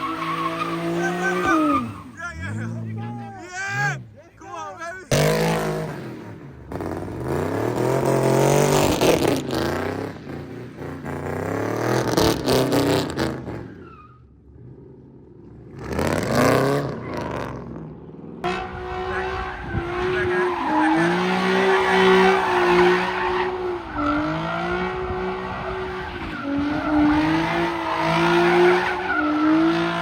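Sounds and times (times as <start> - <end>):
car engine revving: 0.0 - 30.0.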